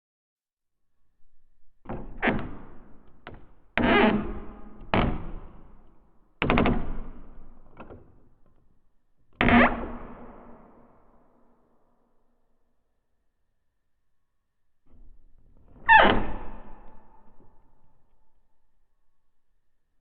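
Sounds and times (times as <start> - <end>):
wooden door creaking: 1.9 - 8.7, 14.9 - 18.1.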